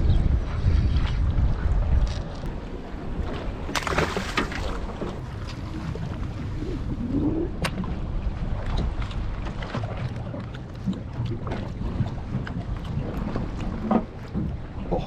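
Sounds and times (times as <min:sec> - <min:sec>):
wind buffeting microphone: 0:00.0 - 0:15.0
water slapping against boat: 0:02.4 - 0:15.0.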